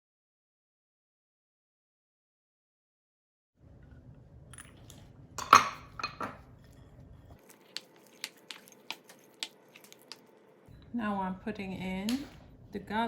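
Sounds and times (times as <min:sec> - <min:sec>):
utensils clinking on dishware: 0:04.6 - 0:06.5.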